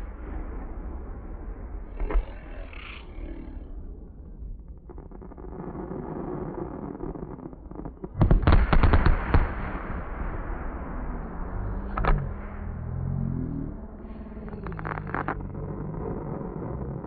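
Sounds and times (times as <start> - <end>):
low rumble: 0.0 - 17.0
firework bangs and crackles: 4.6 - 12.8, 13.8 - 17.0.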